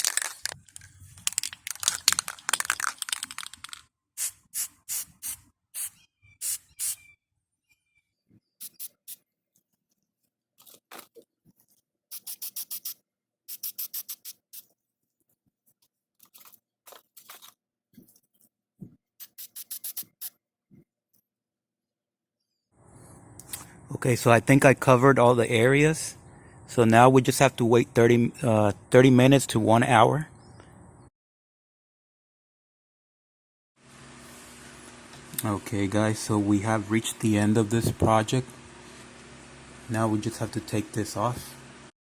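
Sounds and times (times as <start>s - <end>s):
spray can being shaken: 0.0s - 7.0s, 12.1s - 14.7s, 19.2s - 20.3s
spray can hissing: 1.3s - 7.0s, 8.6s - 9.2s, 12.1s - 14.6s, 19.2s - 20.3s.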